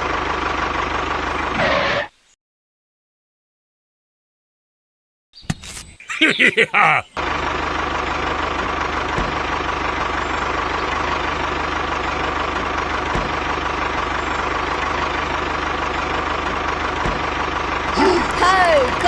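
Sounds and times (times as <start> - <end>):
small engine idling: 0.0 - 1.6, 7.2 - 19.0.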